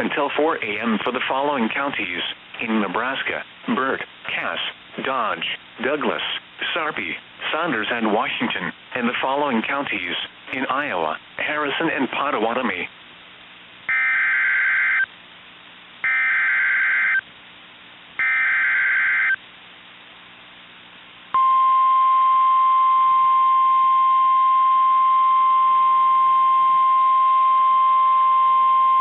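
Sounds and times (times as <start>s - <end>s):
steady warning alarm tone: 13.9s - 15.1s, 16.0s - 17.2s, 18.2s - 19.4s.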